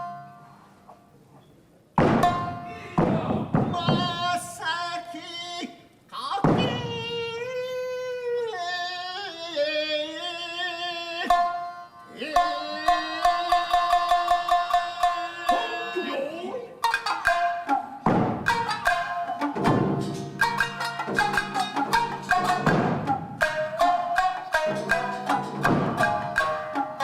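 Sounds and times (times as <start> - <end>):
run of sharp struck notes: 2.0 - 4.3, 16.8 - 27.0.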